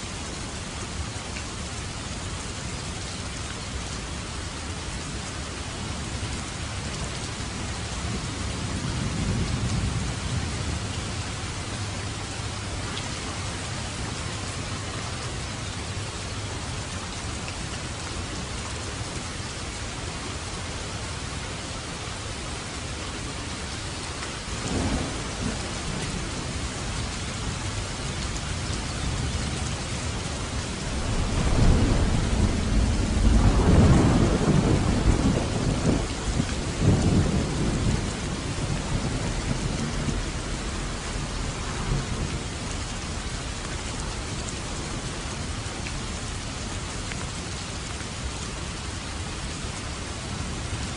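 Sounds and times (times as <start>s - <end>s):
steady rain falling: 0.0s - 50.9s
thunder rumbling: 24.6s - 27.6s, 30.0s - 43.3s.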